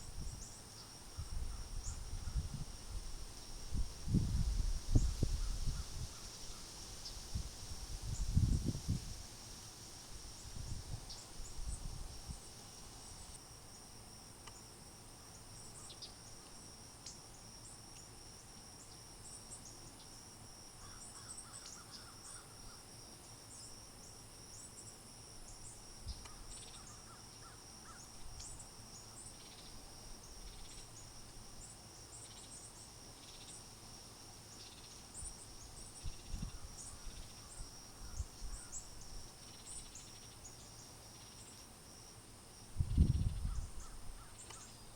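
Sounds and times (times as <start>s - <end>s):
insects trilling: 0.0s - 44.9s
wind on microphone: 1.1s - 9.3s, 10.2s - 12.4s, 36.0s - 37.2s, 42.8s - 44.2s.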